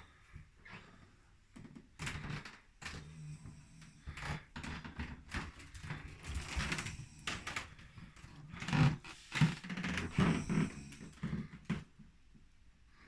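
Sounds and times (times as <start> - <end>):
snoring: 2.1 - 7.8, 8.5 - 11.9.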